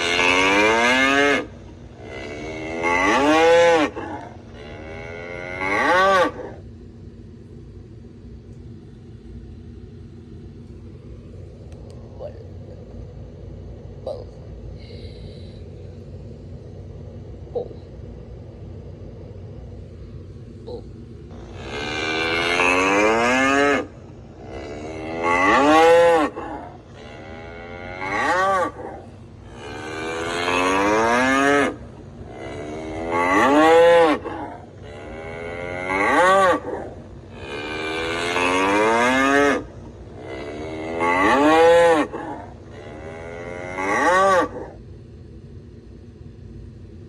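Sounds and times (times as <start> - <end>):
bull bellowing: 0.0 - 6.7, 16.6 - 18.1, 20.4 - 44.9.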